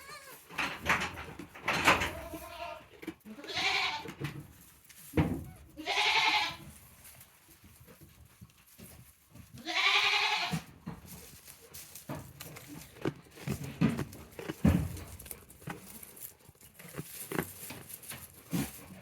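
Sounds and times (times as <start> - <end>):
goat bleating: 0.0 - 0.6, 2.0 - 4.2, 5.7 - 6.7, 9.6 - 10.7.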